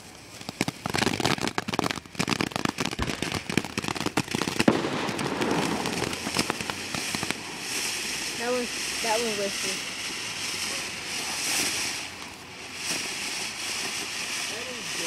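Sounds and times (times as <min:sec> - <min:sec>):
firework crackling pops: 0:00.0 - 0:15.0
firework hissing spray: 0:00.0 - 0:15.0.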